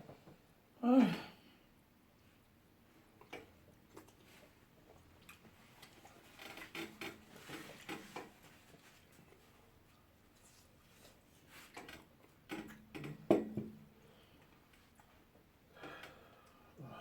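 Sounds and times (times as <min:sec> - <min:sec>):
mouth clicks and smacks eating: 0:03.2 - 0:08.3.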